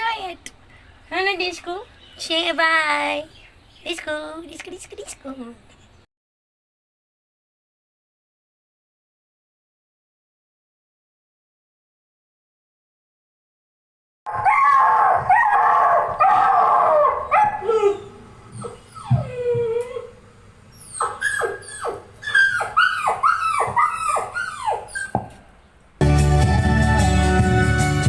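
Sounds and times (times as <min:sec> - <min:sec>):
dog howling: 0:14.3 - 0:20.2, 0:20.8 - 0:25.3
dog whining: 0:14.3 - 0:25.4
dog yelping: 0:14.3 - 0:25.4.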